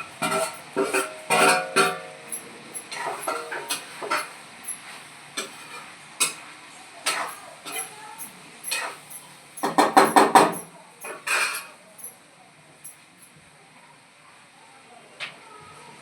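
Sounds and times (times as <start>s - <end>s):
metal utensils and dishes clinking: 0.0s - 12.2s.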